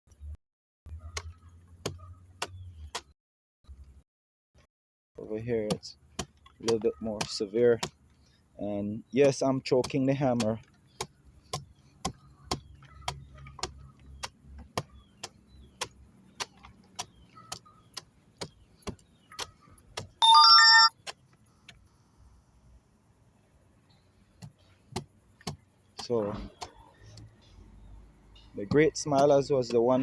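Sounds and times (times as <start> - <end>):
hammer tapping rotten wood: 5.6 - 8.0, 9.2 - 20.2, 24.4 - 26.8, 28.6 - 30.0
electronic jingle: 20.2 - 20.9.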